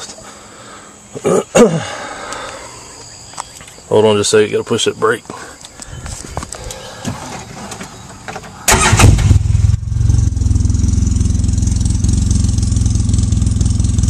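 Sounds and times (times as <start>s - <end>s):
starter cranking: 8.7s - 9.5s
engine idling loudly: 8.7s - 14.0s.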